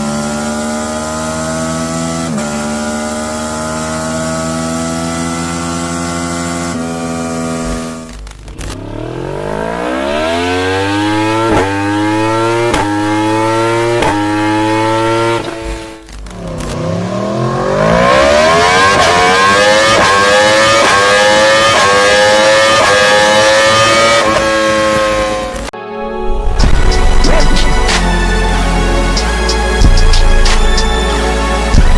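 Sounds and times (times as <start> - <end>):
motorcycle engine accelerating: 0.0 - 31.9.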